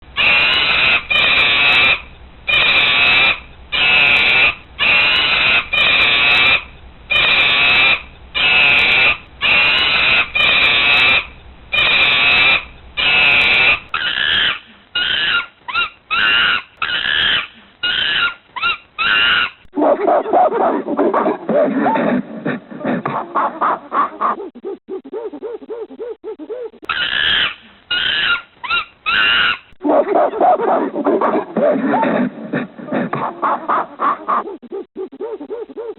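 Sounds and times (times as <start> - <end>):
monkey giving high calls: 0.2 - 22.0, 26.8 - 32.2.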